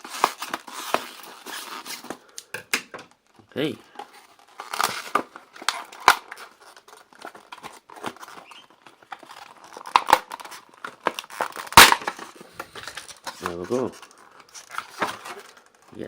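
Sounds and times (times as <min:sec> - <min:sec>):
plastic crackling and crinkling: 0:00.0 - 0:16.0
scissors snipping plastic: 0:07.2 - 0:13.7.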